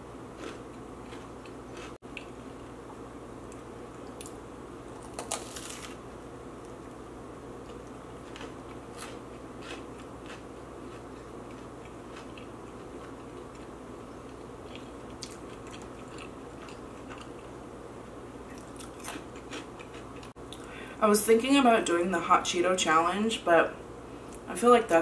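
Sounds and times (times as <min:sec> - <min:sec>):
person chewing crunchy food: 0:00.3 - 0:02.8, 0:03.5 - 0:06.0, 0:07.6 - 0:17.6, 0:18.4 - 0:20.7.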